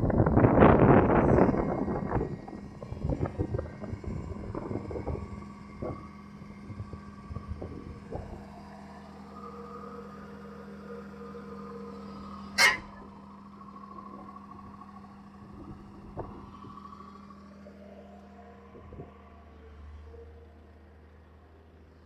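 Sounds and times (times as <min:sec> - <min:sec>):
backhoe engine running: 0:00.0 - 0:22.0
loud metal clank: 0:12.6 - 0:13.1.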